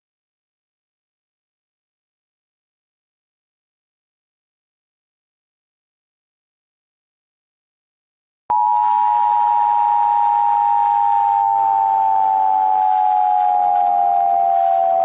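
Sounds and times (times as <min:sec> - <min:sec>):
background hiss: 0:08.5 - 0:15.0
two-tone alert signal: 0:08.5 - 0:15.0.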